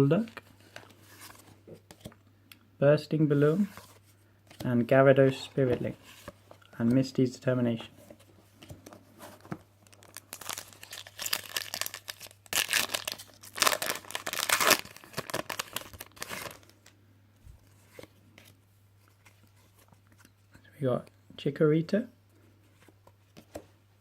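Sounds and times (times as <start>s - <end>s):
foil wrapper tearing and crinkling: 9.9s - 16.8s.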